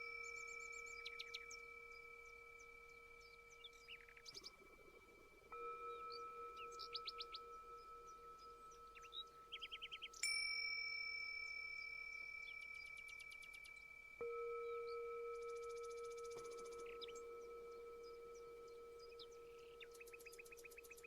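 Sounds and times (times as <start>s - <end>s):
birds chirping in trills: 0.0s - 21.0s
meditation bells ringing: 0.0s - 21.0s.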